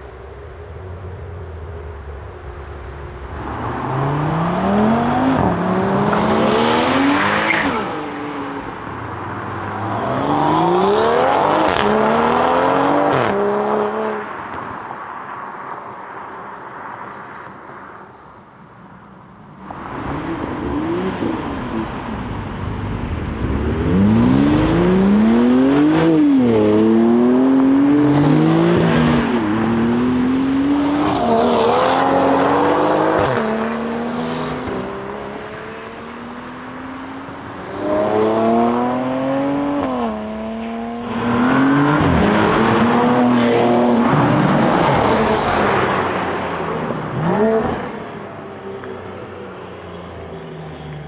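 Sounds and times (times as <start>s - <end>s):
car engine accelerating hard: 19.7s - 51.0s.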